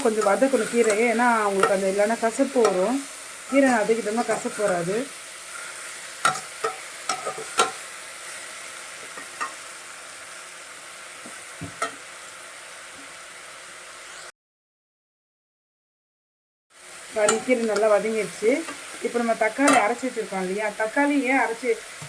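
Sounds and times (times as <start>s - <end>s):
spatula knocking and scraping pan: 0.0s - 2.9s, 6.2s - 7.8s, 11.2s - 12.0s, 19.6s - 20.0s
greens sizzling in a pan: 0.0s - 14.3s, 16.7s - 22.0s.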